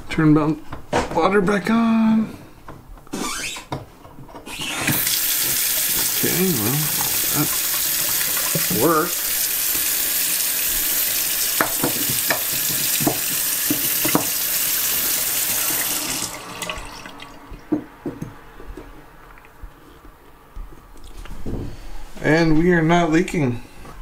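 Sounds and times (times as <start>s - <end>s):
faucet running into sink: 4.8s - 17.5s.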